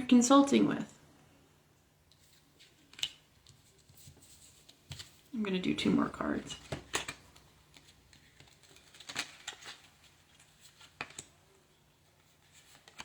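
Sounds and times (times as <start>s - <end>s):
tarot cards flicking and tapping: 2.1s - 5.3s, 6.4s - 11.4s, 12.5s - 13.0s.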